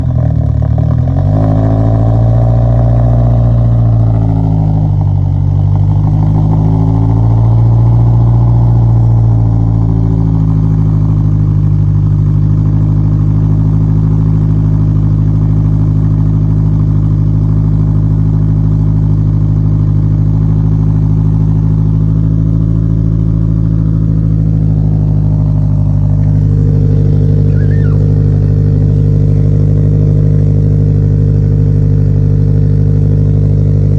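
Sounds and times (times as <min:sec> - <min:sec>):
engine revving then idling: 0:15.3 - 0:33.9.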